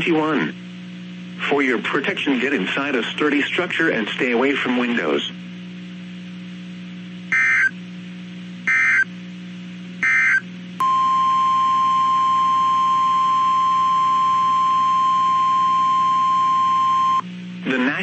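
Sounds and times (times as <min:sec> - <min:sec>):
steady alarm tone: 0:07.3 - 0:07.7, 0:08.7 - 0:09.1, 0:10.0 - 0:17.2
screeching digital data bursts: 0:08.7 - 0:09.0.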